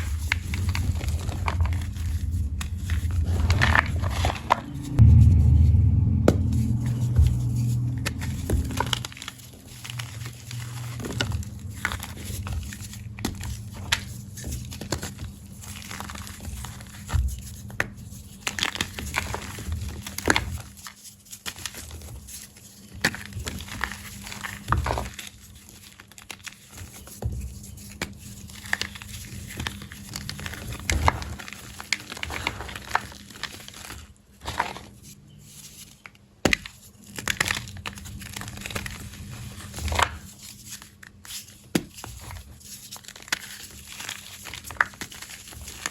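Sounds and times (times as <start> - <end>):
chalk blocks crunching: 0.0 - 5.0, 8.2 - 45.9
heavy low rumble: 0.0 - 20.1.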